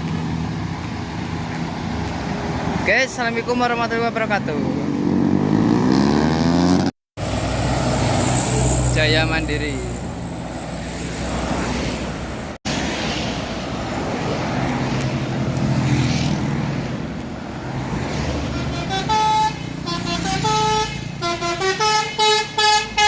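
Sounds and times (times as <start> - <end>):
bus engine running: 18.3 - 23.0
musical bus horn tune: 18.4 - 23.0.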